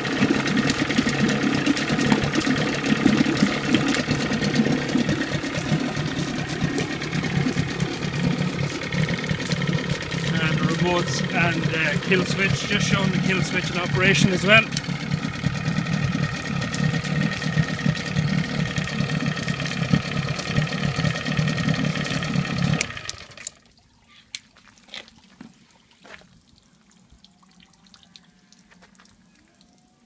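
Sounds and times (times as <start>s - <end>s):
outboard engine running: 0.0s - 23.6s
water dripping and trickling: 0.0s - 30.0s.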